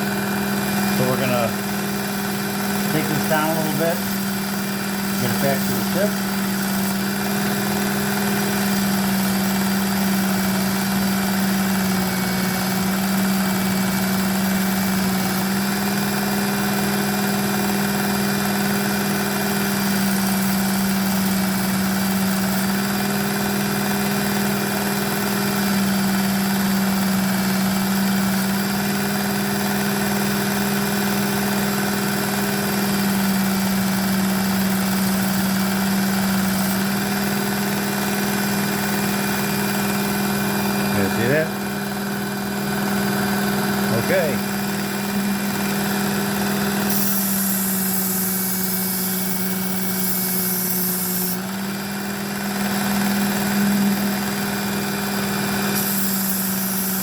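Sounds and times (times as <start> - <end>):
belt sharpener motor running: 0.0 - 57.0
belt grinding knife blade: 46.9 - 51.4, 55.7 - 57.0.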